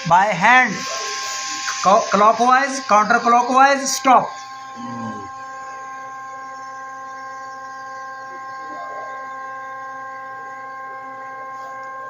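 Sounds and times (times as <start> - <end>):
steady machine hum: 0.0 - 12.0.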